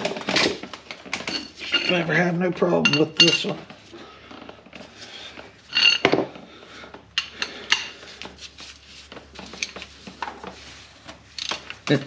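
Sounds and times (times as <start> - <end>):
metal tools clinking: 0.0 - 3.7, 5.7 - 6.3, 9.4 - 9.9, 11.3 - 12.0.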